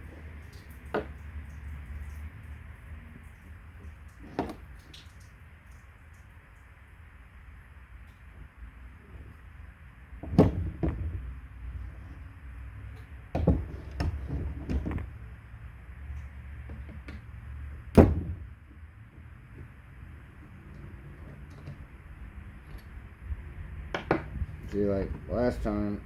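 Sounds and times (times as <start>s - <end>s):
steady low hum: 6.2s - 26.0s
metal parts knocking and clunking: 10.2s - 12.3s, 13.0s - 15.3s, 23.9s - 25.2s.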